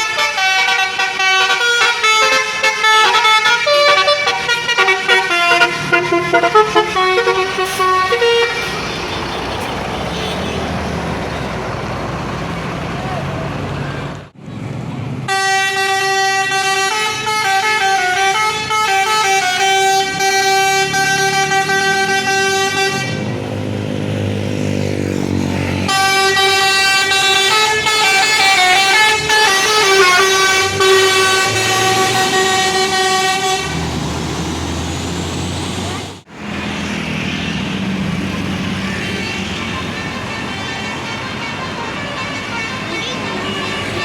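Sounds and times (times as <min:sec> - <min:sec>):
musical air horn playing tune: 0:00.0 - 0:08.8, 0:15.3 - 0:23.3, 0:25.9 - 0:33.8, 0:39.2 - 0:44.0.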